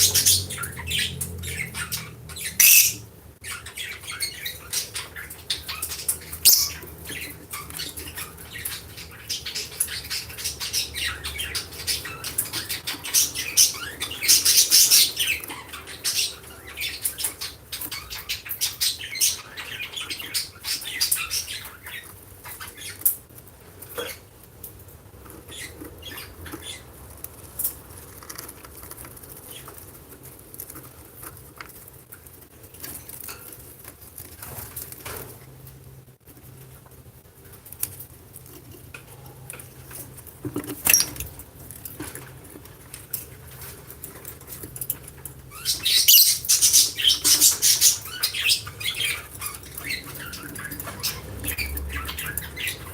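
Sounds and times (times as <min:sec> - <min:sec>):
lovebirds chirping and chattering: 0:00.0 - 0:35.5, 0:37.5 - 0:52.9
scratchy clicks and rustles: 0:23.0 - 0:45.5.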